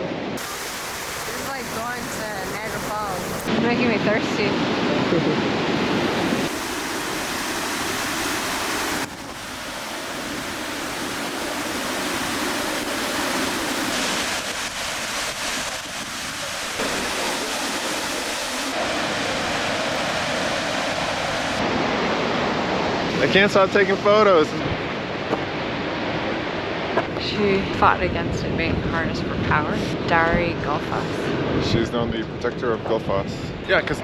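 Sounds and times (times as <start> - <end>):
waterfall river rushing: 0.4 - 3.6, 5.8 - 21.8.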